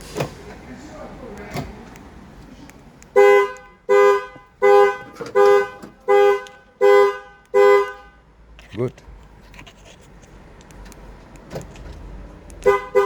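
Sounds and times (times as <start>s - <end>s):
car horn panic alarm blasts: 3.1s - 8.3s, 12.6s - 13.0s.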